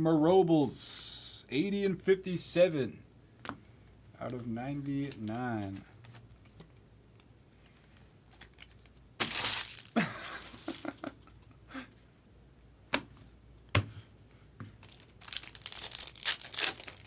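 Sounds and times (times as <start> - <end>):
wrapper crinkling: 7.8 - 11.0, 14.8 - 17.0
foil wrapper tearing: 8.3 - 10.9, 14.8 - 17.0.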